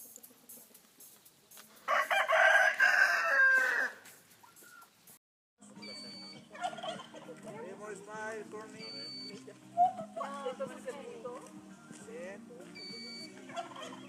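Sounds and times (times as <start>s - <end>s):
rooster crowing: 1.8s - 4.1s.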